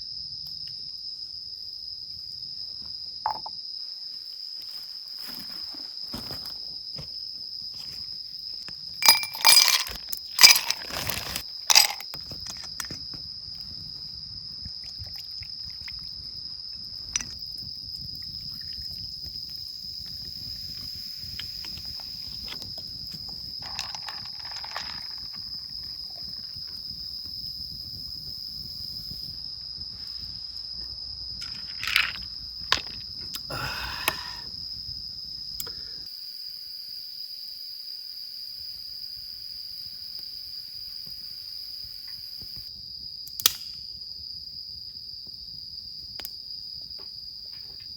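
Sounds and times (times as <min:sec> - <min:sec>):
insects trilling: 0:00.0 - 0:47.9
camp gear clinks and knocks: 0:03.3 - 0:03.6, 0:05.2 - 0:08.0, 0:08.9 - 0:13.3, 0:22.1 - 0:26.8, 0:31.4 - 0:34.3.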